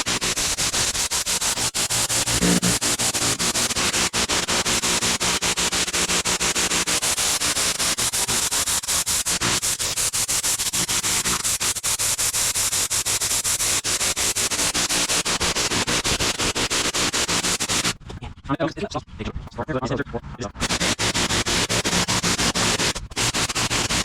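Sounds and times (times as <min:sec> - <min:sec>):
pressure washer engine running: 0:00.0 - 0:08.8, 0:13.8 - 0:17.9, 0:20.6 - 0:24.0
loud hiss of water spray: 0:00.0 - 0:18.0, 0:20.6 - 0:24.0.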